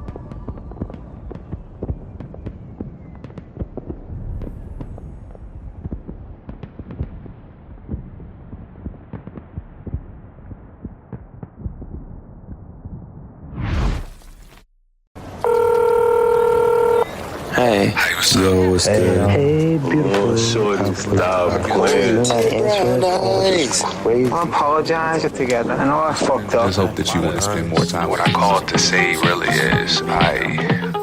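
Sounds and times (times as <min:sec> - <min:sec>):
low rumble: 0:04.0 - 0:14.1.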